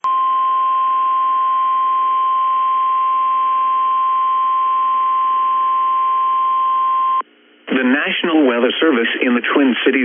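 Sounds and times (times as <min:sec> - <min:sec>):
faint radio hiss: 0:07.2 - 0:10.0.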